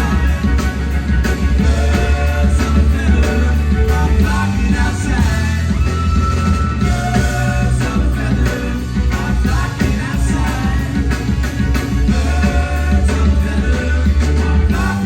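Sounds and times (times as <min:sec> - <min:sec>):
bass guitar: 0:00.0 - 0:15.0
drums: 0:00.0 - 0:15.0
electric guitars: 0:00.0 - 0:15.0.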